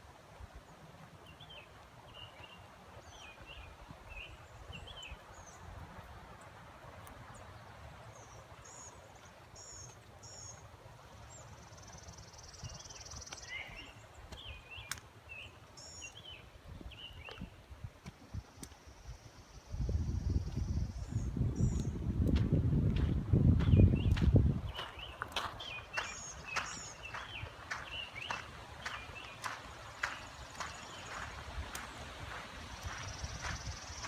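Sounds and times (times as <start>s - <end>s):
birds chirping: 7.3s - 17.6s, 23.6s - 34.0s.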